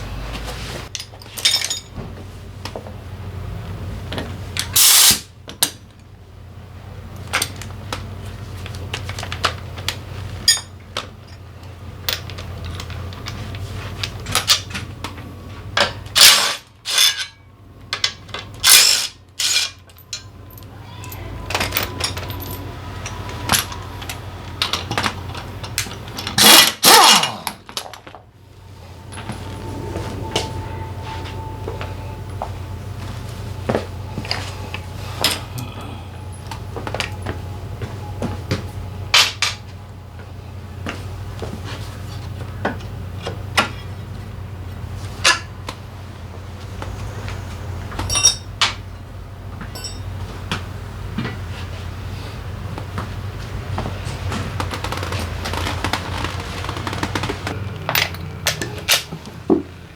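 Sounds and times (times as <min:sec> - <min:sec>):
metal tools clinking and knocking: 0:00.9 - 0:02.0, 0:08.6 - 0:14.8, 0:15.8 - 0:26.8, 0:29.0 - 0:39.7, 0:48.0 - 0:48.8, 0:49.6 - 0:50.2, 0:56.9 - 0:59.6
low steady hum: 0:27.4 - 0:59.9.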